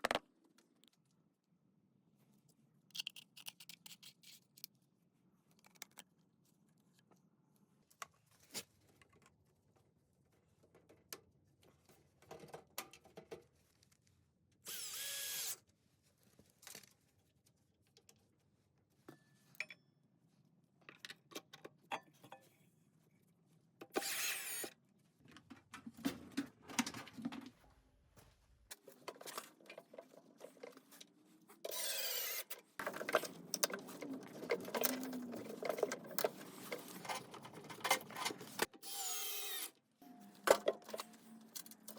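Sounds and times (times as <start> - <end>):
clicks and knocks of tools: 5.6 - 6.1, 32.5 - 38.8, 40.5 - 41.9
power tool whirring: 14.7 - 15.6, 24.0 - 24.7, 31.7 - 32.6, 38.8 - 39.7.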